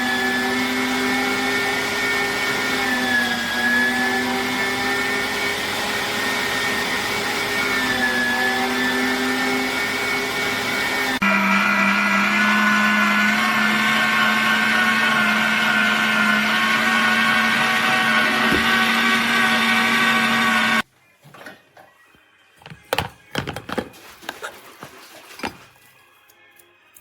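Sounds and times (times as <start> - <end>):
meat grinder motor whining: 0.0 - 20.8.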